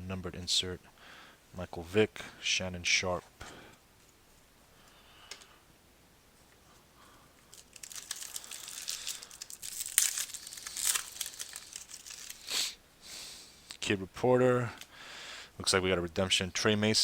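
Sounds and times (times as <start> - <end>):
foil card pack tearing and crinkling: 7.5 - 12.5.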